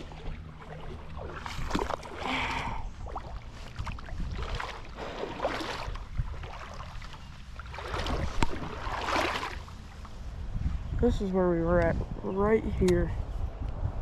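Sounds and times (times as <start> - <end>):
creek water splashing: 0.0 - 10.2
steady low rumble: 0.0 - 14.0.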